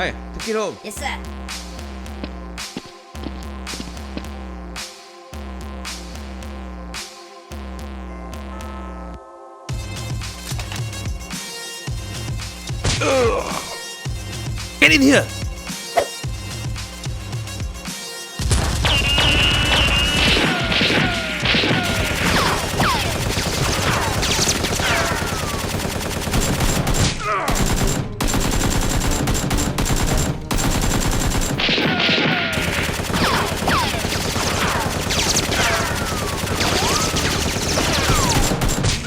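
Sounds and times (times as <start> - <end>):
rapid gunfire: 18.4 - 39.0
falling whistling sweeps: 18.9 - 20.6.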